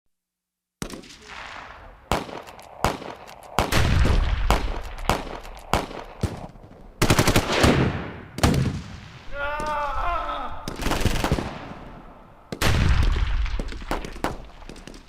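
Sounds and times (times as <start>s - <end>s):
single gunshots: 0.8s - 9.7s, 10.6s - 15.0s
machine-gun burst: 2.1s - 8.8s, 10.7s - 11.7s.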